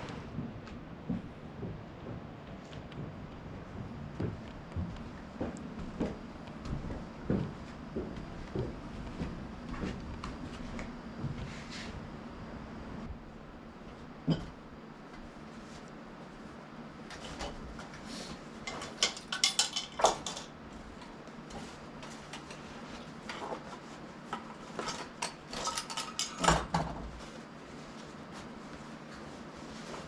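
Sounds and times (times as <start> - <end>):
faint steady hum: 0.0 - 30.0
dishes and cutlery clinking: 18.7 - 20.5, 24.4 - 26.9.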